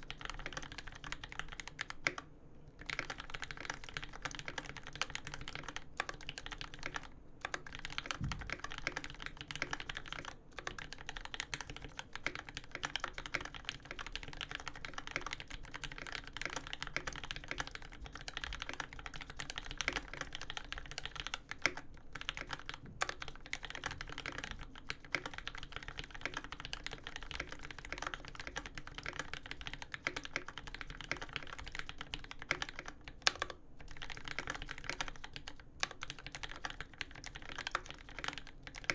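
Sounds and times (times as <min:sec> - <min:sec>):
fast typing on mechanical keyboard: 0:00.0 - 0:38.9
deep keyboard thud: 0:08.1 - 0:08.6.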